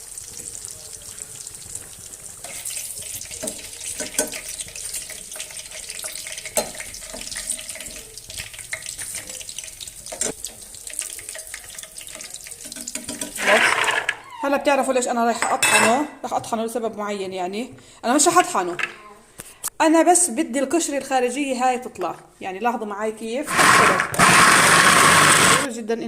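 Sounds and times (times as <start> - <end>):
tap water running into sink: 0.0 - 14.2.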